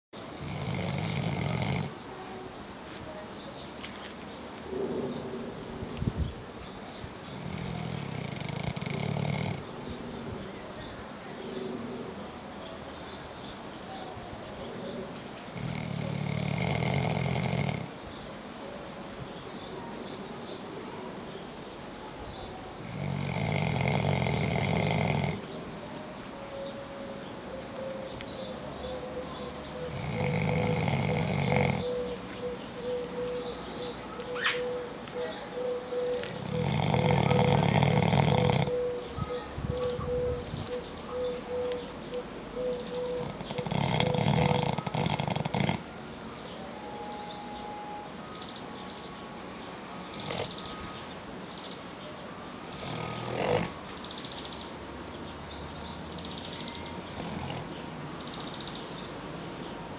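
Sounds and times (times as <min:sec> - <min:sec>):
pet snoring: 0:00.4 - 0:02.0, 0:07.3 - 0:09.7, 0:15.5 - 0:17.9, 0:22.8 - 0:25.5, 0:29.8 - 0:31.9, 0:36.2 - 0:38.8, 0:43.2 - 0:45.9, 0:50.1 - 0:50.6, 0:52.7 - 0:53.8, 0:57.1 - 0:57.7.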